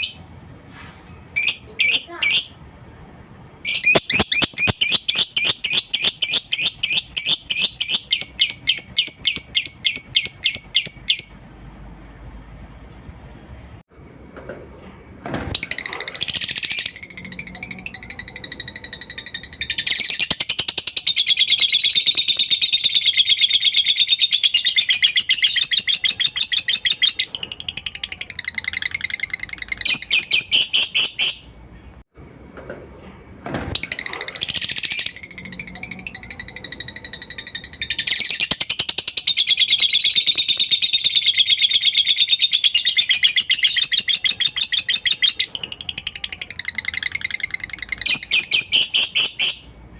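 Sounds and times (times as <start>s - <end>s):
lovebird chattering trill: 3.7s - 11.3s.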